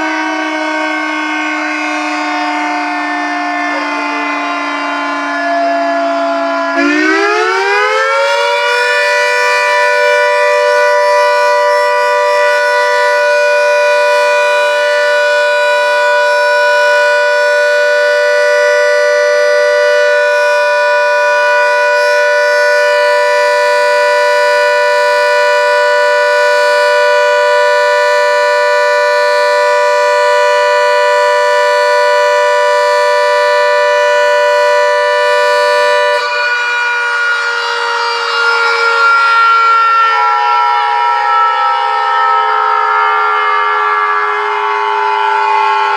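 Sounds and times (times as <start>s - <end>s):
siren sounding a chord: 0.0s - 45.9s.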